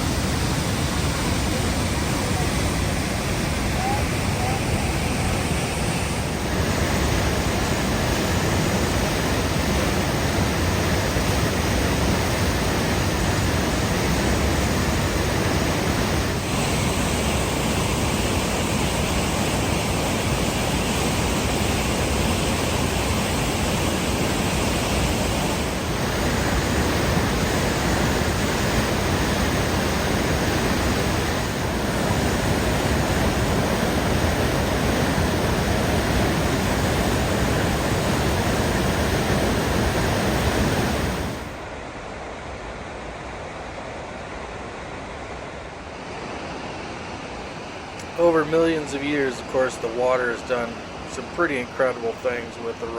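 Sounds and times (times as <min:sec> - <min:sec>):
waterfall roaring: 0:00.0 - 0:52.9.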